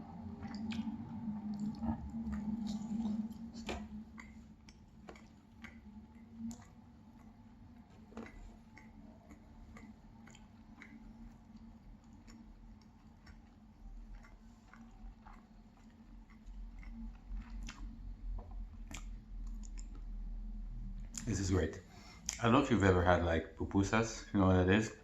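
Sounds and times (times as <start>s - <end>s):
person chewing food: 0.0s - 20.3s
low hum: 0.0s - 25.0s
wet mouth clicks and smacks: 0.4s - 20.1s, 22.2s - 22.4s.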